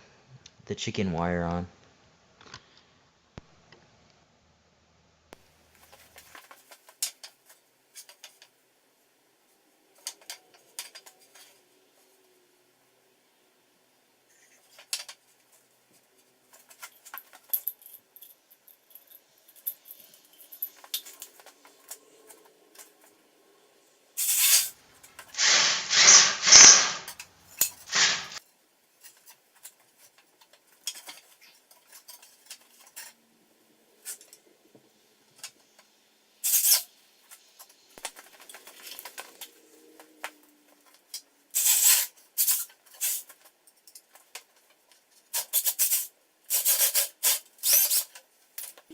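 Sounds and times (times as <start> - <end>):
loud bursts of noise: 25.4 - 27.1, 27.9 - 28.4.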